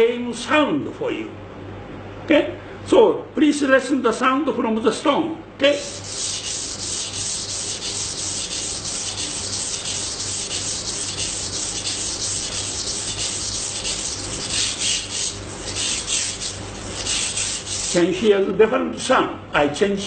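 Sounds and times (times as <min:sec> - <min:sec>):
knife rasping on sharpening stone: 0:05.8 - 0:18.0.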